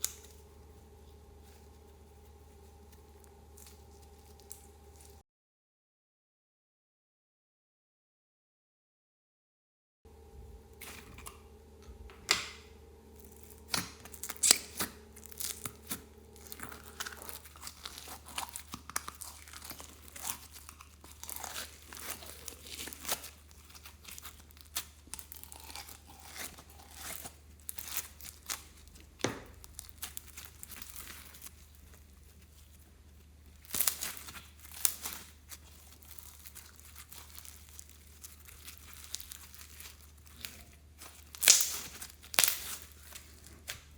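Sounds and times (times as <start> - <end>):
slime popping and crackling: 13.2 - 32.7, 33.5 - 43.9.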